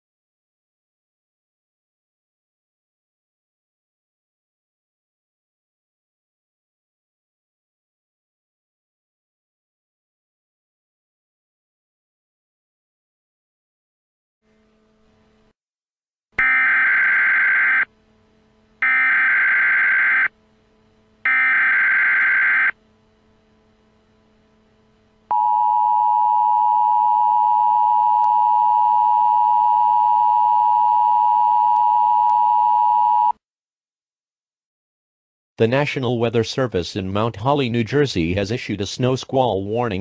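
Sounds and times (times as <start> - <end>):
buzzy data bursts: 16.4 - 18.0, 18.8 - 20.3, 21.2 - 22.8
steady attention tone: 16.4 - 33.3.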